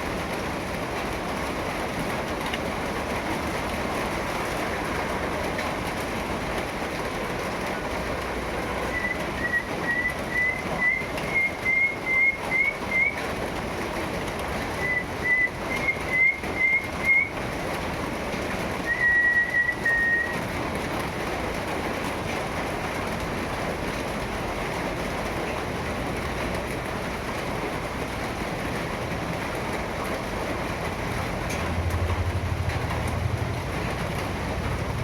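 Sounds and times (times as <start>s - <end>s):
steady rain falling: 0.0s - 35.0s
long held whistle: 8.9s - 13.2s, 14.8s - 17.4s, 18.9s - 20.4s.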